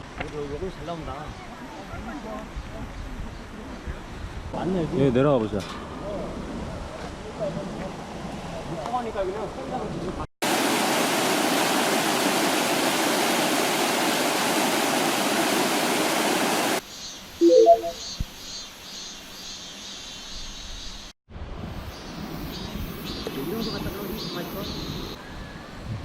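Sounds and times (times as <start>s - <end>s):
stream rushing over rocks: 10.4s - 16.8s
short pitched notes: 17.4s - 18.0s.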